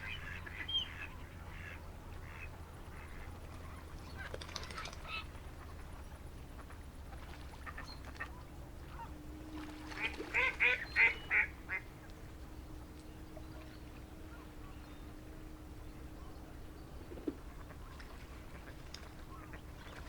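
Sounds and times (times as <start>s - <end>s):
duck quacking: 0.0s - 3.3s, 10.0s - 11.8s.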